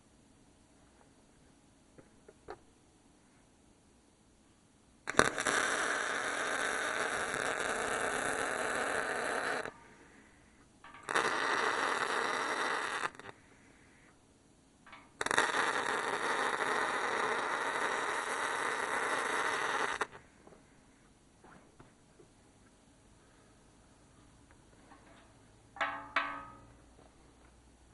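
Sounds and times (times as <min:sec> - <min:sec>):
welder arc crackling: 0:10.9 - 0:13.4, 0:14.9 - 0:20.2.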